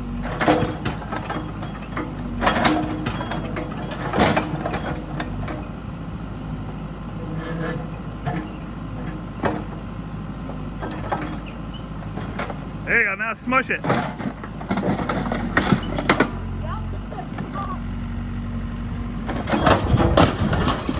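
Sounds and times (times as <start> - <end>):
metal clanks and crunches: 0.0 - 6.0, 10.4 - 20.9
excavator engine running: 0.0 - 20.9.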